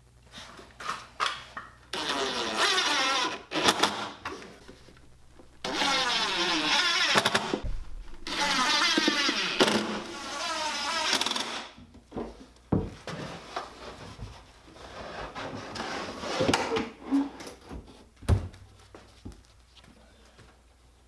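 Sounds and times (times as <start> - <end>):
power tool motor running: 4.7 - 11.4.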